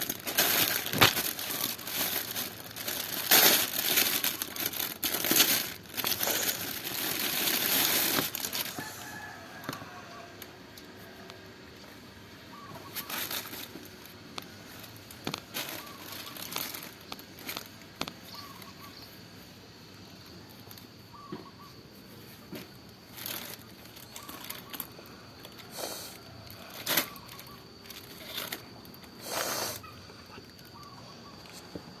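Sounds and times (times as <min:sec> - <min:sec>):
plastic rustling and crinkling: 0:00.0 - 0:10.0, 0:12.7 - 0:18.4, 0:22.5 - 0:30.8.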